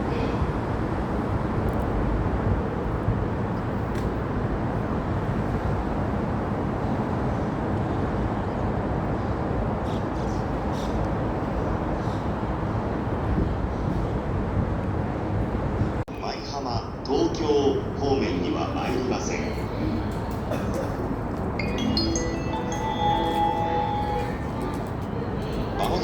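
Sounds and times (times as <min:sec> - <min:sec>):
railway platform rumble: 0:00.0 - 0:26.0.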